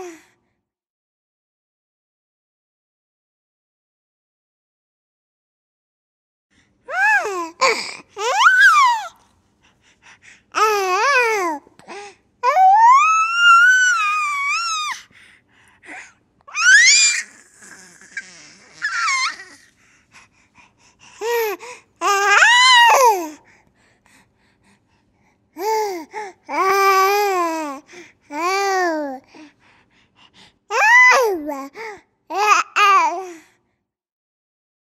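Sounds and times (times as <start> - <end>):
baby squealing and giggling: 8.2 - 9.1, 12.6 - 15.0, 16.5 - 19.7.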